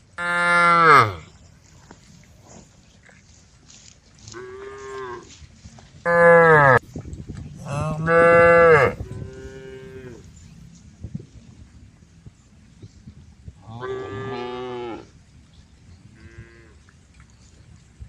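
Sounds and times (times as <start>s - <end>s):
cows mooing: 0.2s - 1.3s, 6.1s - 6.8s, 7.6s - 10.3s, 13.7s - 15.1s.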